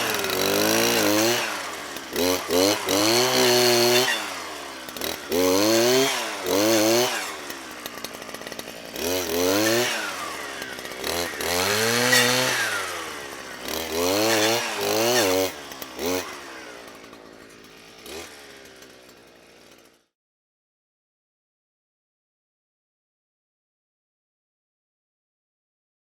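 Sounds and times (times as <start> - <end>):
brushcutter engine revving: 0.0 - 20.1.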